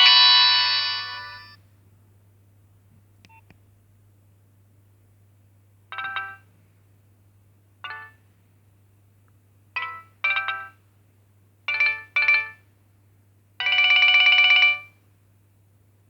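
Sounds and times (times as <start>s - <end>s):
synthesized phone ringtone: 0.0s - 1.6s, 6.0s - 6.4s, 7.9s - 8.2s, 9.8s - 10.8s, 11.7s - 12.6s, 13.6s - 15.0s
low steady hum: 0.0s - 11.7s.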